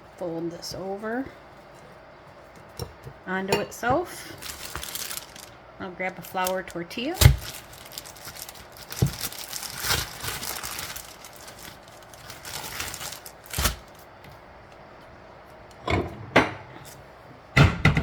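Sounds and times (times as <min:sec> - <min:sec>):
plastic bag crinkling: 0:04.2 - 0:14.2.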